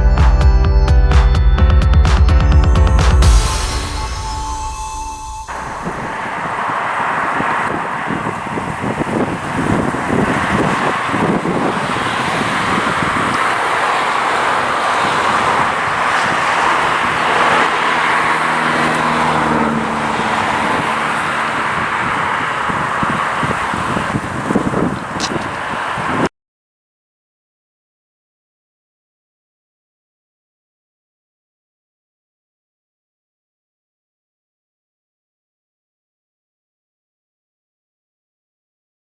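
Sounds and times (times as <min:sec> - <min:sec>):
vehicle engine hum: 0:00.8 - 0:26.3
cars passing on busy road: 0:03.2 - 0:26.3.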